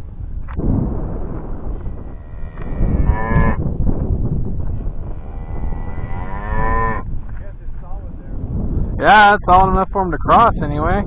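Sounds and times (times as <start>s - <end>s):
steady low rumble: 0.0s - 11.0s
cows mooing: 1.7s - 3.6s, 4.8s - 7.1s.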